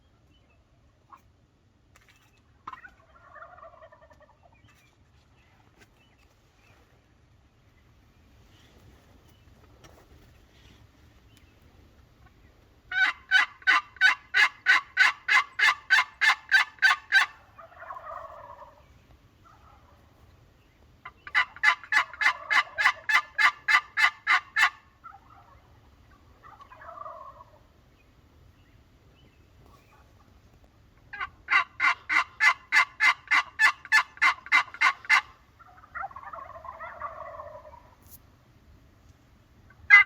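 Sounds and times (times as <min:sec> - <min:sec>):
wild turkey gobbling: 0:02.6 - 0:04.8, 0:12.2 - 0:20.3, 0:21.0 - 0:28.1, 0:29.6 - 0:30.4, 0:31.0 - 0:38.0, 0:39.7 - 0:40.0.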